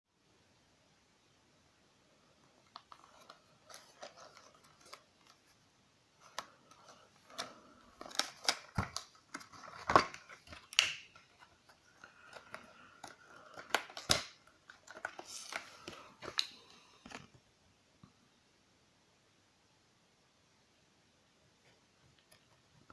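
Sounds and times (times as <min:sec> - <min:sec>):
plastic crinkling: 0:02.6 - 0:05.6, 0:06.2 - 0:17.4
plastic packaging clicks and snaps: 0:06.3 - 0:17.3.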